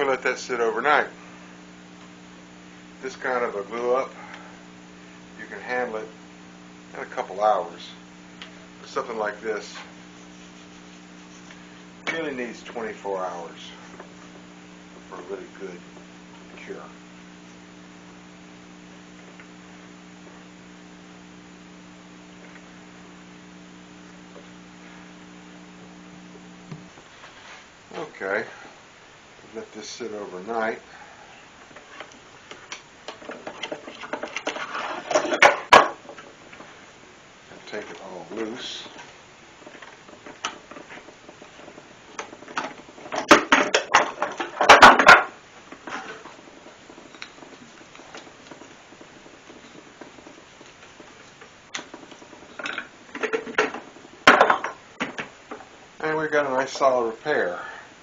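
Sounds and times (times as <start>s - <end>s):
electrical mains hum: 0.0s - 58.0s
faint hiss: 0.0s - 58.0s.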